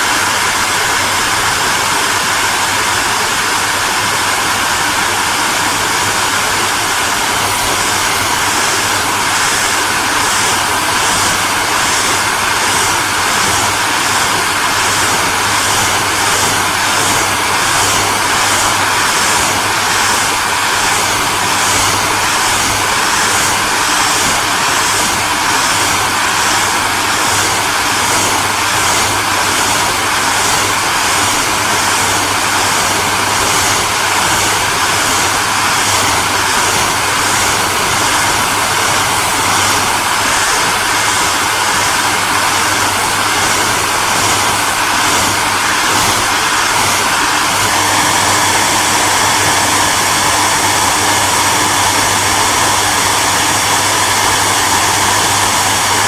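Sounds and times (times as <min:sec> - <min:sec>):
hair dryer running: 0:00.0 - 0:56.0.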